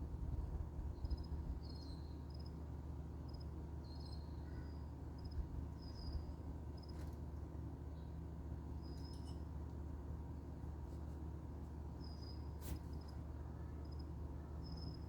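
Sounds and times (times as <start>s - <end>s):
faint high-pitched chirping: 0.9s - 2.5s, 3.3s - 7.0s, 7.9s - 9.4s, 12.0s - 15.0s.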